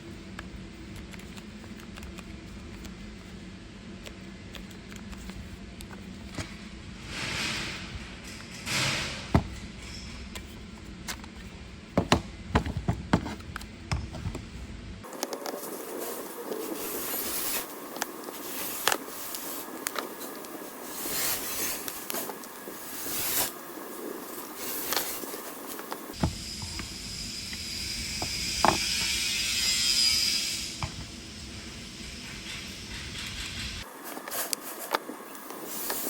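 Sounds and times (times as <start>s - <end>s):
rushing hiss: 15.6s - 30.8s.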